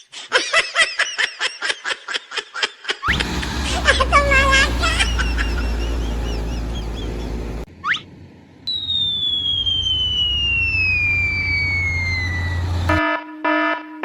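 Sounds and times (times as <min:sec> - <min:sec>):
long falling whistle: 0:08.7 - 0:13.0
rising whistle: 0:08.7 - 0:13.0.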